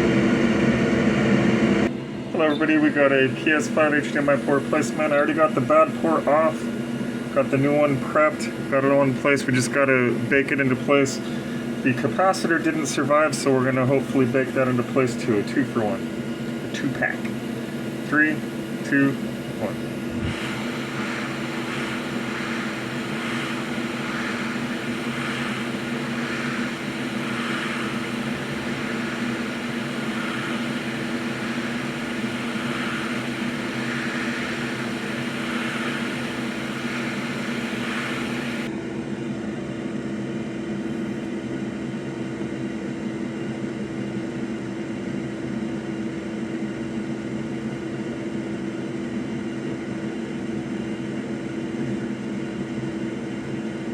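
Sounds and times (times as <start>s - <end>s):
hot air station hiss: 2.4s - 38.7s
motor hum: 14.3s - 38.7s.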